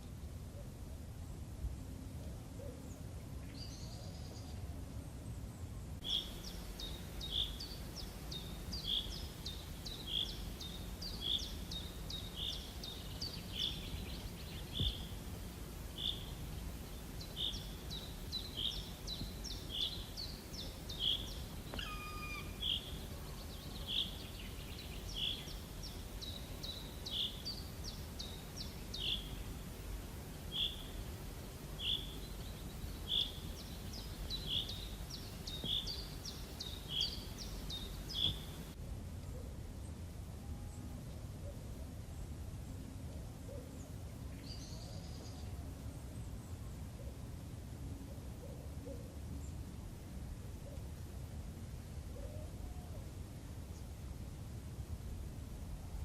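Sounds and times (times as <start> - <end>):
low background rumble: 0.0 - 48.4
bird calling high note: 21.0 - 24.1.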